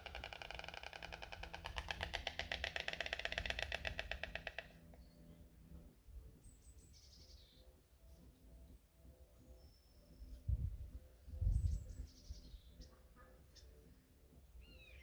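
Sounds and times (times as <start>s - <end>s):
stork bill clattering: 0.0s - 4.8s
faint small bird chirps: 6.4s - 15.0s.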